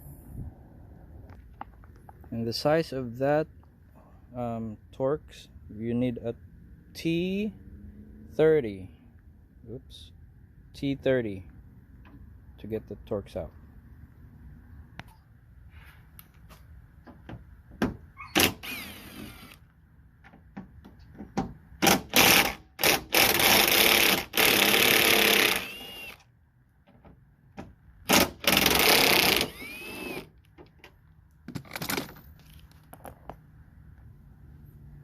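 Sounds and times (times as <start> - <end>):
cordless drill driving screws: 18.3 - 19.6, 21.8 - 26.3, 28.1 - 30.3
drill motor whine spinning down: 29.5 - 30.2.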